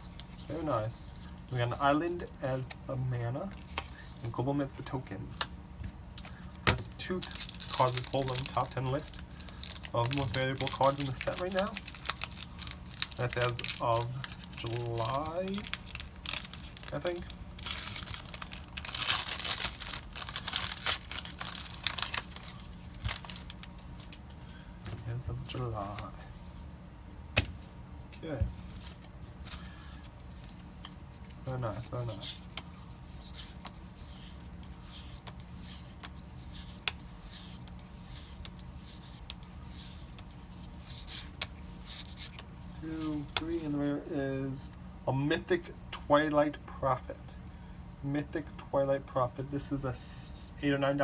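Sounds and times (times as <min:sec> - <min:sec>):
steady low hum: 0:00.0 - 0:51.0
cards being handled: 0:03.4 - 0:04.3, 0:05.3 - 0:26.6, 0:28.4 - 0:43.8
foil wrapper crinkling: 0:06.3 - 0:24.3.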